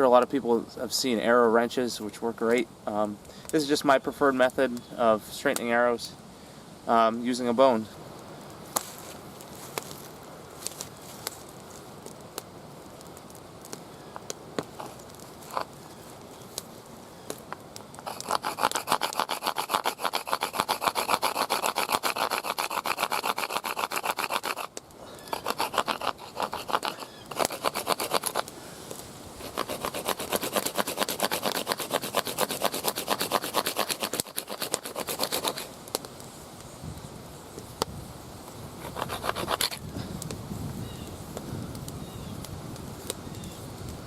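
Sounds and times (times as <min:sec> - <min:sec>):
bone rasping against stone: 0:14.8 - 0:15.7, 0:18.0 - 0:28.5, 0:29.4 - 0:35.7, 0:38.8 - 0:39.8.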